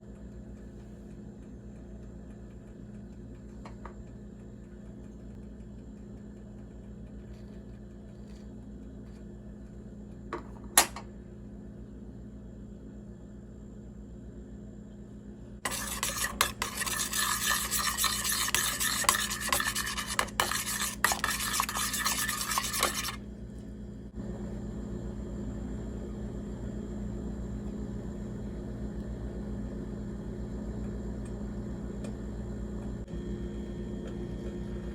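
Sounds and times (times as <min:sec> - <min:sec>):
steady low hum: 0:00.0 - 0:34.9
spoon scraping in a pan: 0:15.7 - 0:23.2.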